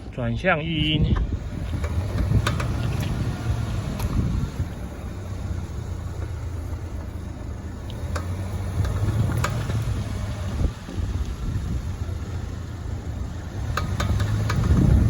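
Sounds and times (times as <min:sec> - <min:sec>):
car engine low rumble: 0:00.0 - 0:15.0
sharp clicks: 0:13.6 - 0:15.0.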